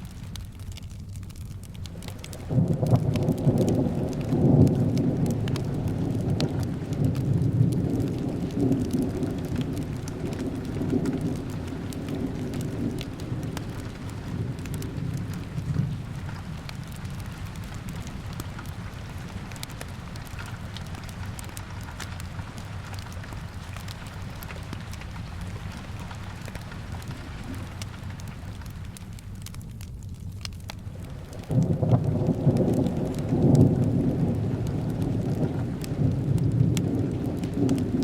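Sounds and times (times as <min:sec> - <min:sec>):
steady rain: 0:00.0 - 0:38.0
wood fire crackling: 0:00.0 - 0:38.0
thunder rolling: 0:01.8 - 0:25.9, 0:31.0 - 0:38.0.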